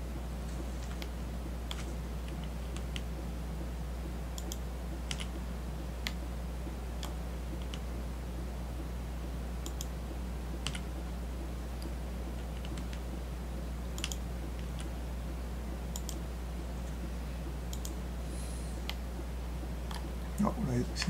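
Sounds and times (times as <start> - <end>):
low electrical hum: 0.0 - 21.0
computer mouse clicks: 0.8 - 3.1, 4.4 - 5.4, 7.0 - 7.9, 9.6 - 10.0, 10.6 - 10.9, 11.8 - 13.0, 13.9 - 15.0, 15.9 - 16.2, 17.7 - 18.0.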